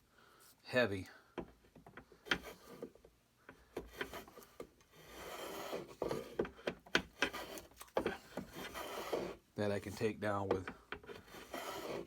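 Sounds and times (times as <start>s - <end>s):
hand plane scraping wood: 2.2s - 3.0s, 3.6s - 12.0s.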